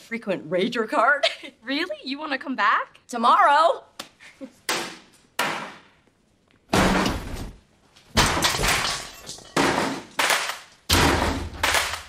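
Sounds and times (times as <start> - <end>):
hammer smashing objects: 6.7 - 7.5, 8.1 - 12.0
glass breaking: 8.1 - 12.0.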